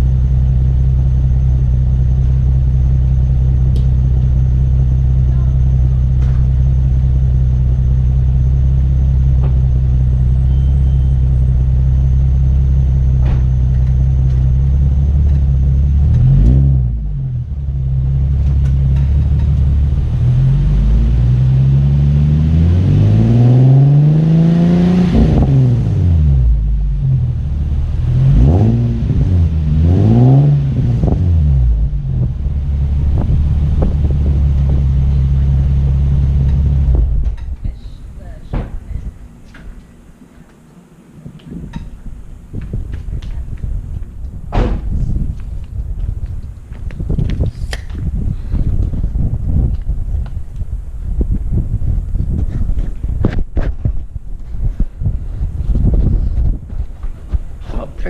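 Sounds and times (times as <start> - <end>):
car engine idling and revving: 0.0 - 38.4.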